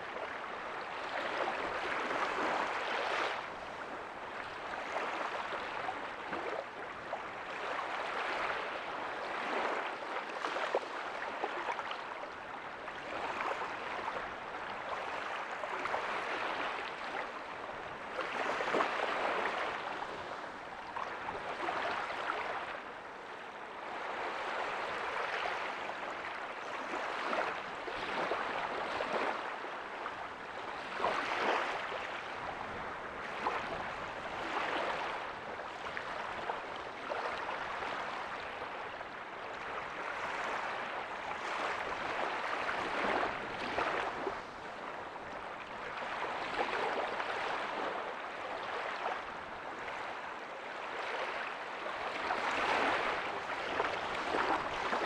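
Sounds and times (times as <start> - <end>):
ocean waves washing up beach: 23.8 - 55.0.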